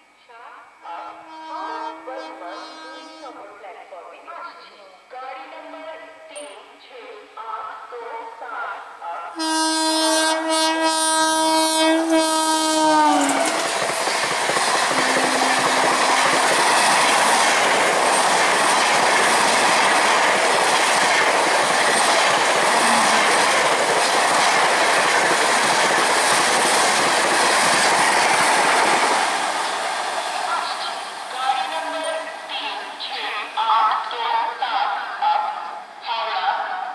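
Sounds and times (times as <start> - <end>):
train horn blast: 0.8 - 3.6, 9.4 - 13.9, 14.9 - 18.2, 22.6 - 23.8.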